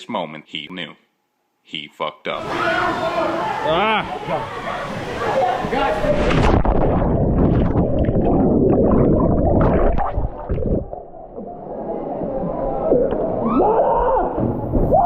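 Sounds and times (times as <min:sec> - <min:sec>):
muffled underwater rushing water: 0:02.4 - 0:13.5.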